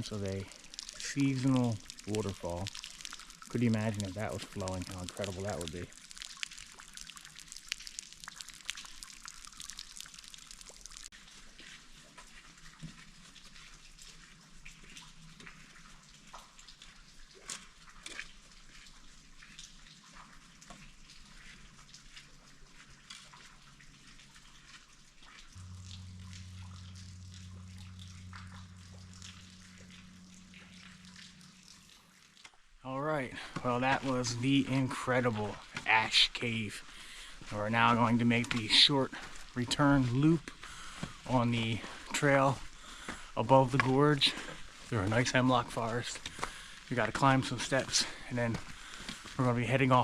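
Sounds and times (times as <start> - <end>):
low steady hum: 0.0 - 11.2, 21.6 - 50.0
water dripping and trickling: 0.0 - 50.0.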